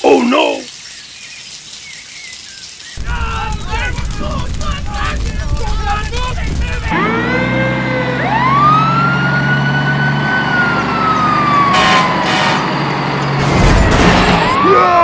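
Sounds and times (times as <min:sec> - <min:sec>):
siren wailing: 0:06.8 - 0:15.0.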